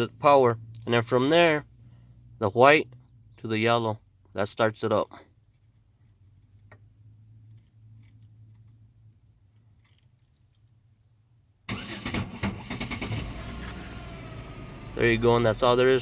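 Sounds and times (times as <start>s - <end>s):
engine cranking and running: 11.7s - 15.9s.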